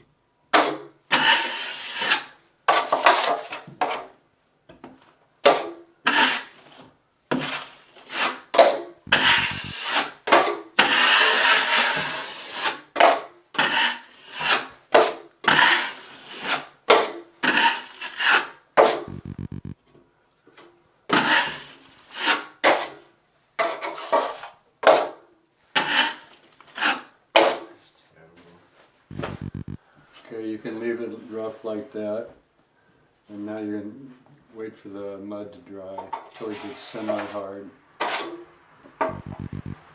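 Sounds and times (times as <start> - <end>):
drywall knife scraping wall: 0.5 - 4.2, 5.4 - 19.1, 21.1 - 23.0, 23.6 - 27.7, 38.0 - 38.5.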